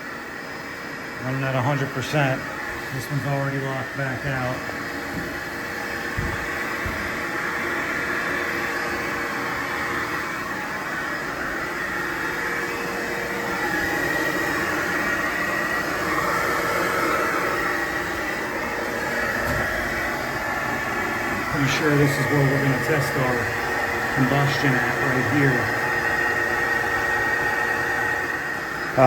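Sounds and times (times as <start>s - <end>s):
boiler burner rushing: 0.0s - 29.0s.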